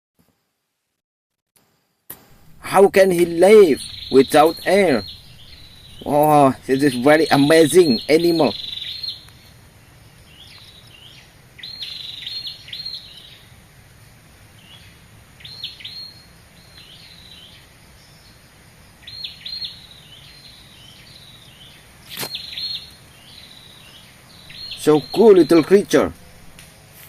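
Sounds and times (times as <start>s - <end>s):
background hiss: 1.6s - 27.0s
sharp click: 2.1s - 2.4s, 22.1s - 22.4s
bird chirping: 2.4s - 13.6s, 14.5s - 26.6s.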